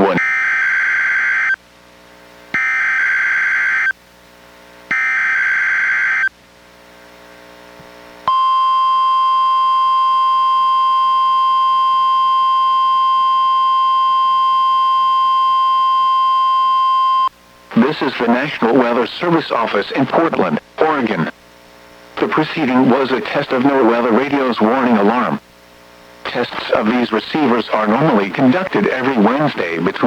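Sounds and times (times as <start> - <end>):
steady high alarm tone: 0.0 - 1.6, 2.6 - 4.0, 4.9 - 6.3, 8.3 - 17.3.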